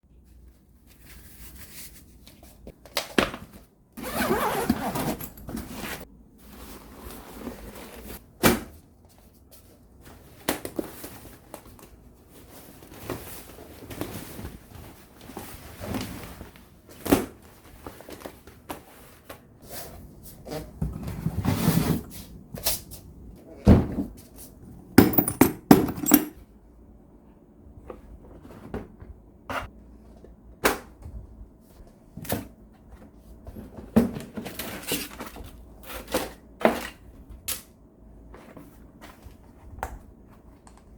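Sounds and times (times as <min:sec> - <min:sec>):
hand tools thunking on hard surface: 0:25.0 - 0:26.4.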